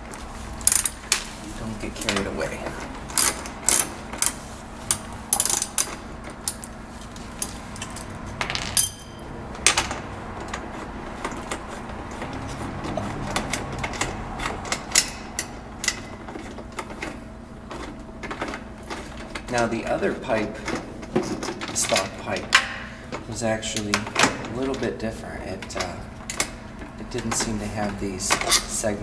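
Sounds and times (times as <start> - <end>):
metal clanks: 2.0 - 19.6
wrench clinking on metal exhaust: 3.1 - 10.6, 11.2 - 17.1.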